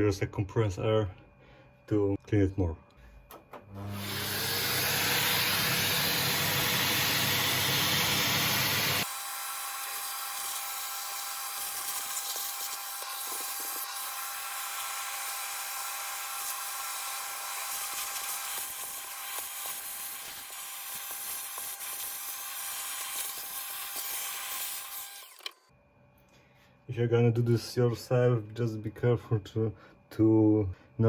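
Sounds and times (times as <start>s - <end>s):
vacuum cleaner whine: 3.5s - 19.5s
vacuum cleaner hissing: 3.8s - 25.3s.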